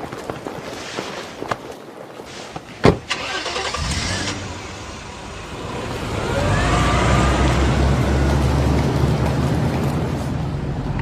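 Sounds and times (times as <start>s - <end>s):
car engine starting and running: 2.9s - 11.0s.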